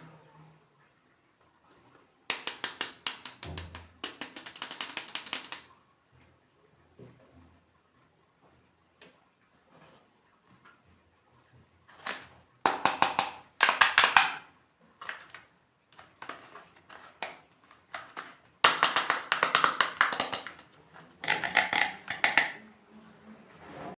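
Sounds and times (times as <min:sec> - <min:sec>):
plastic toys clicking and rattling: 0:02.3 - 0:05.6, 0:12.0 - 0:15.4, 0:16.0 - 0:22.6.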